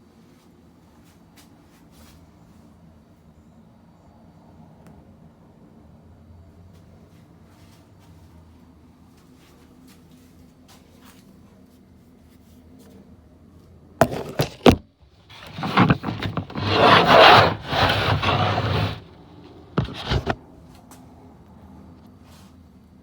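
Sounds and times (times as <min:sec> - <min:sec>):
plastic and metal scraping: 0:14.0 - 0:20.4.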